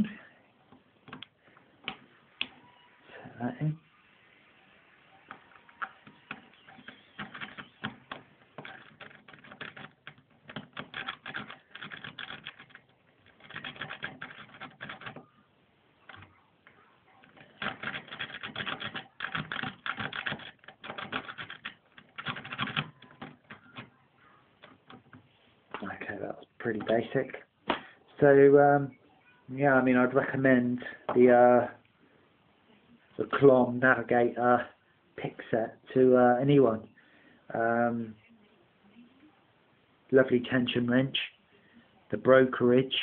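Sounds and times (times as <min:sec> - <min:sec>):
lock pick clicking and rattling: 0:06.3 - 0:15.2, 0:17.3 - 0:23.9.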